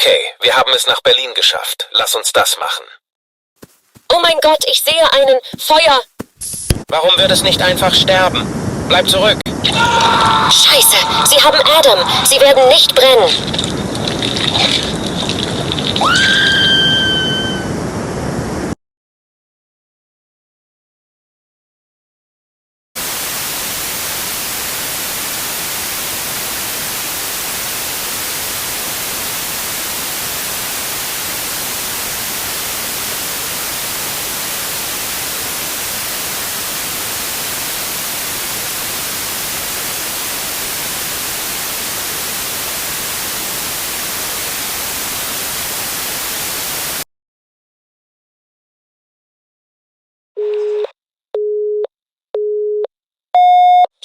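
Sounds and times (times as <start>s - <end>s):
white noise static hiss: 3.7s - 9.7s, 23.0s - 47.0s.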